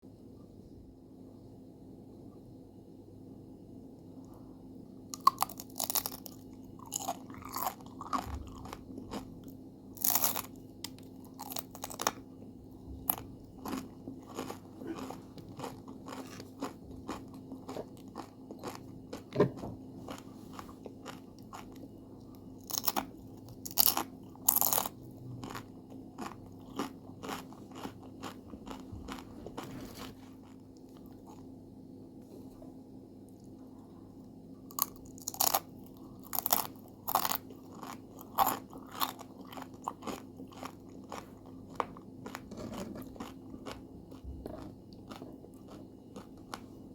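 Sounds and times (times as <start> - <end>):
faint steady hum: 0.0 - 46.9
chips crunching while chewed: 5.2 - 12.2, 13.0 - 21.9, 22.6 - 31.5, 34.7 - 46.7.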